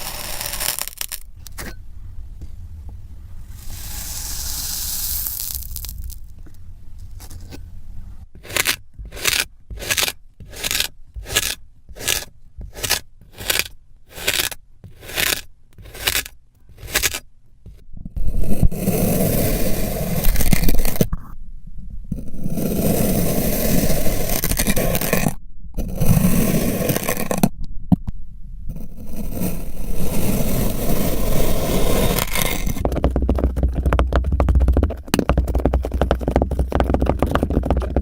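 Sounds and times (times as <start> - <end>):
sand scraping: 0.0 - 1.8, 3.5 - 6.3, 8.4 - 21.1, 22.4 - 27.4, 29.0 - 38.0
faint hiss: 1.8 - 6.9.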